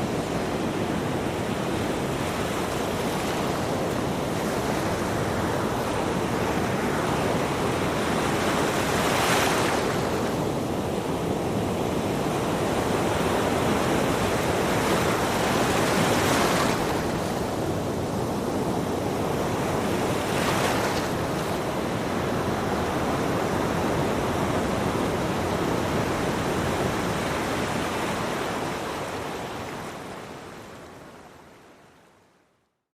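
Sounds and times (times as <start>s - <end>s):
waves washing onto a beach: 0.0s - 32.0s
waves breaking: 11.3s - 30.3s.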